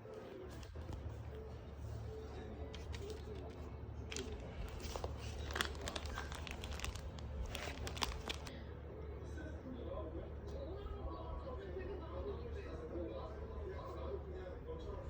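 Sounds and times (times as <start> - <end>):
rustling and crinkling handling: 0.0 - 8.5
low steady hum: 0.0 - 15.0.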